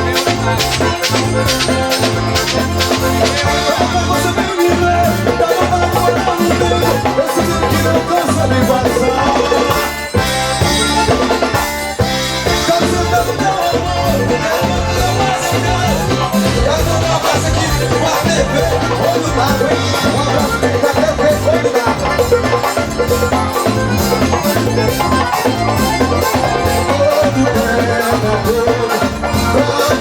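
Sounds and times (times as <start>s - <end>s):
accordion melody: 0.0s - 30.0s
drum kit and bass beat: 0.0s - 30.0s.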